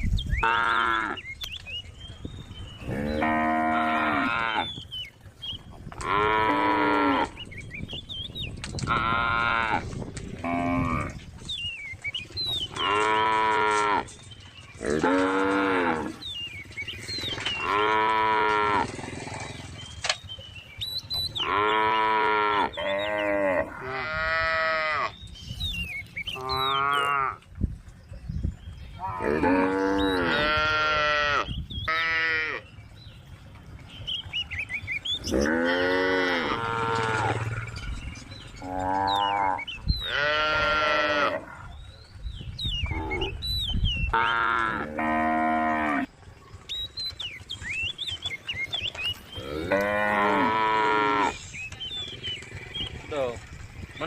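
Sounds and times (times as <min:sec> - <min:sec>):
small birds chirping: 0:00.0 - 0:23.6, 0:24.8 - 0:54.0
cows mooing: 0:00.4 - 0:01.2, 0:02.8 - 0:04.8, 0:05.9 - 0:07.6, 0:08.8 - 0:11.3, 0:12.6 - 0:19.9, 0:21.2 - 0:25.2, 0:26.3 - 0:27.4, 0:29.0 - 0:32.7, 0:35.1 - 0:41.8, 0:42.8 - 0:43.4, 0:44.1 - 0:46.1, 0:49.0 - 0:53.4.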